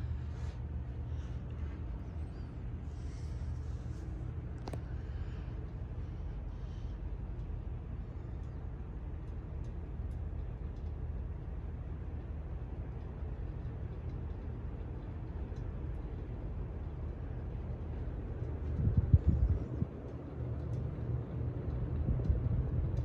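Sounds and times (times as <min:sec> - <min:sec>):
ceiling fan whoosh and hum: 0:00.0 - 0:23.0
faint ticks: 0:04.4 - 0:19.4, 0:20.0 - 0:23.0.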